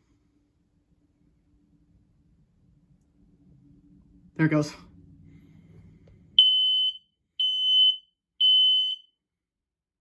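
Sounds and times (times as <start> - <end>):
smoke alarm beeping: 6.4 - 9.1.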